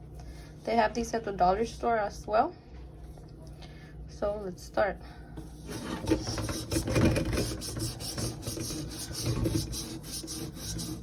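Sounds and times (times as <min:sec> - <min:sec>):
scrub pad scrubbing a kettle: 0:05.4 - 0:11.0.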